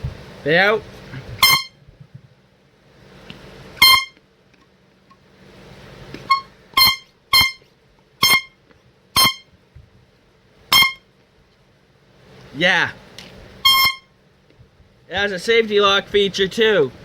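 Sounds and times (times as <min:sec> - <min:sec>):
air horn blasts: 0:01.4 - 0:01.8, 0:03.8 - 0:04.2, 0:06.3 - 0:09.6, 0:10.7 - 0:11.1, 0:13.6 - 0:14.2.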